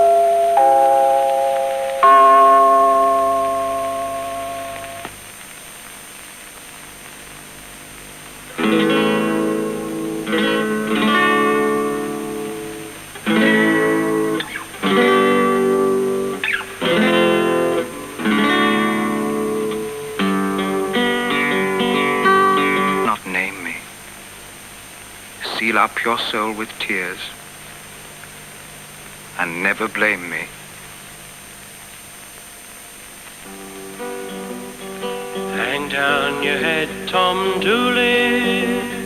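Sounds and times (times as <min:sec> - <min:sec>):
bell-like chime: 0:00.0 - 0:05.0
acoustic guitar strummed chords: 0:00.0 - 0:05.2, 0:08.5 - 0:23.8, 0:33.4 - 0:39.0.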